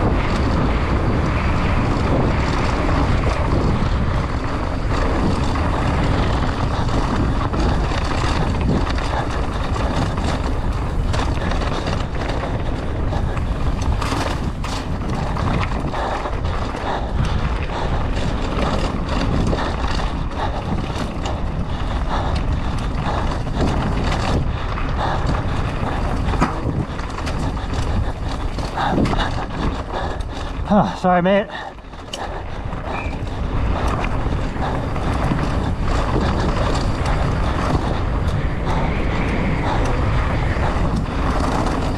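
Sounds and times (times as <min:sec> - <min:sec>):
wind buffeting microphone: 0:00.0 - 0:41.9
bike clattering on rocks: 0:08.7 - 0:15.8, 0:26.0 - 0:29.7, 0:32.0 - 0:37.0.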